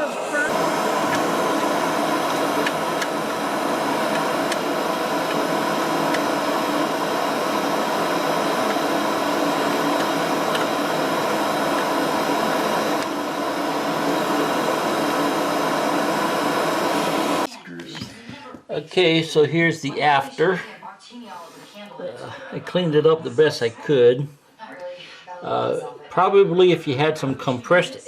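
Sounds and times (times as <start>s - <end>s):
vacuum cleaner running: 0.0s - 17.5s.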